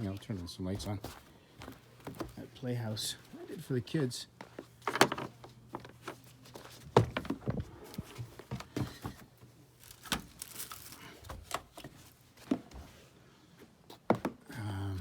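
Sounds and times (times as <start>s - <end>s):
light knocks and rustles: 4.4s - 13.1s.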